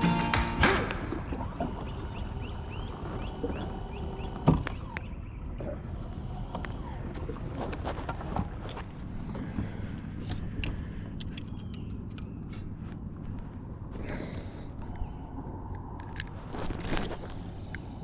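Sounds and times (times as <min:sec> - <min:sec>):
clicks of gear being handled: 0:00.0 - 0:01.5
sharp knock: 0:00.0 - 0:01.9.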